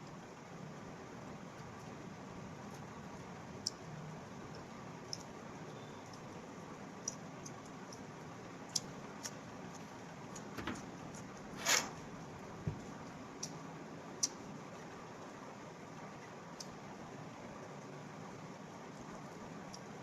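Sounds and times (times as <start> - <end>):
faint steady hiss: 0.0 - 20.0
brief rustle: 11.5 - 12.0.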